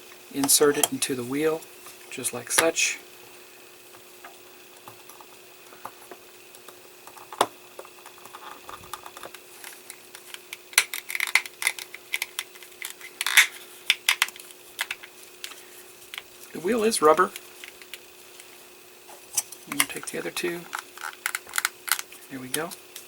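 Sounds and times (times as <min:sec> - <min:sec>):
faint steady hum: 0:00.0 - 0:23.0
plastic parts clicking: 0:07.1 - 0:16.3, 0:19.7 - 0:23.0.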